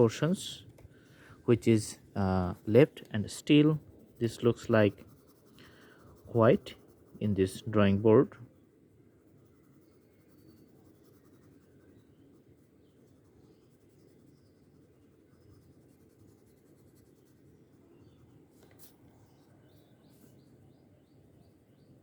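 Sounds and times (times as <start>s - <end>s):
colouring strokes on paper: 0.0s - 20.5s.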